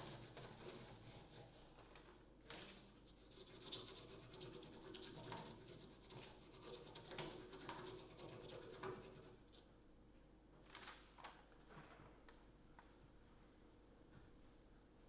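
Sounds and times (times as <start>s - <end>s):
pencil scratching on paper: 0.0s - 1.8s, 2.8s - 9.4s.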